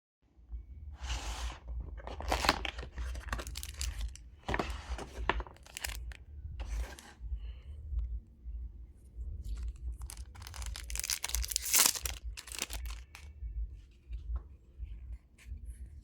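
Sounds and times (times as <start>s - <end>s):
steady low hum: 0.3s - 16.0s
packaging torn and crinkled: 2.3s - 4.2s, 5.6s - 6.1s, 9.6s - 13.2s.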